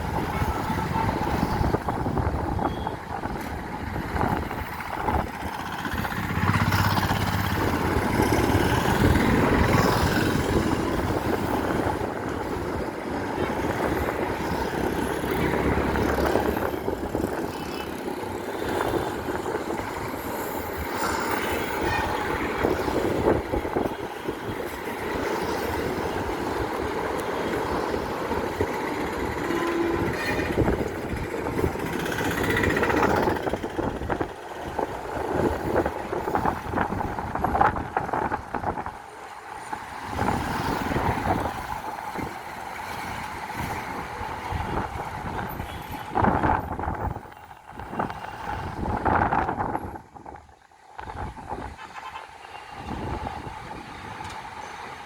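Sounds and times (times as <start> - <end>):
freight train wheels on rails: 0.0 - 55.0.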